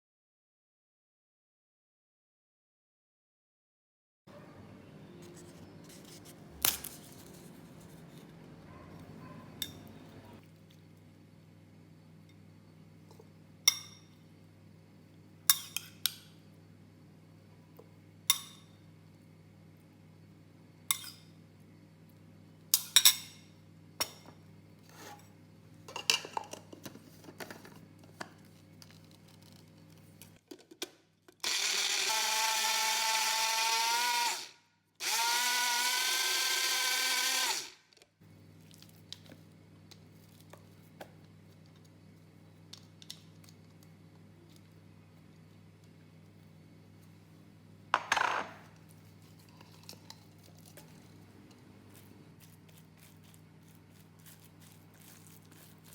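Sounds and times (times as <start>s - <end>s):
blender motor running: 31.4s - 37.8s.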